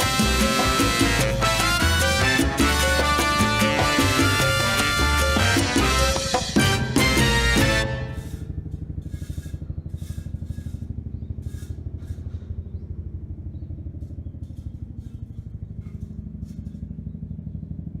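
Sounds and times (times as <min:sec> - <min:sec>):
background music with fast pulse: 0:00.0 - 0:08.4.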